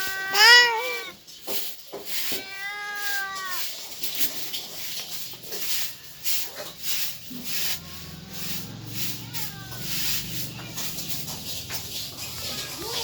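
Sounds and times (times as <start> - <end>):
cat meowing: 0.0 - 1.2, 2.1 - 3.8
scratchy rustling: 0.0 - 13.0.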